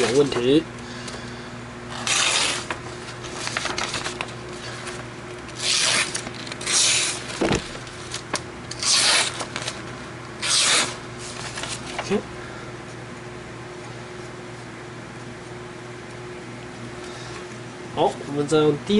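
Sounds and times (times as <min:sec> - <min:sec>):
knife cutting paper: 0:01.9 - 0:09.8, 0:10.4 - 0:12.0.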